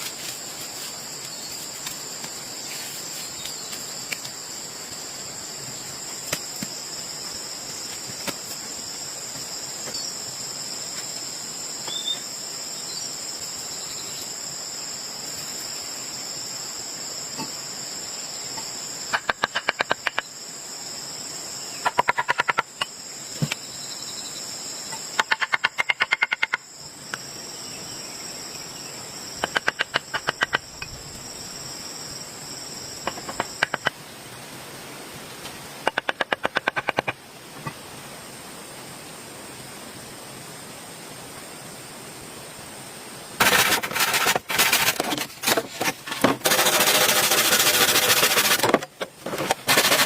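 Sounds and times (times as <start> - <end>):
high-pitched insect drone: 0.0 - 34.0, 46.4 - 48.8.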